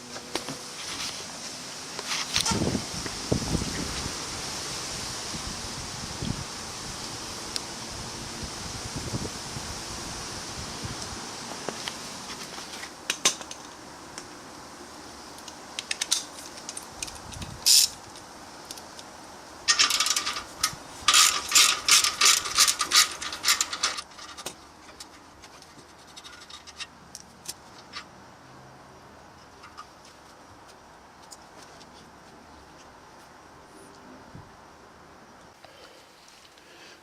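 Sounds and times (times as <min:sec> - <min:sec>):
metal parts clicking: 0:15.4 - 0:19.0, 0:19.7 - 0:28.1.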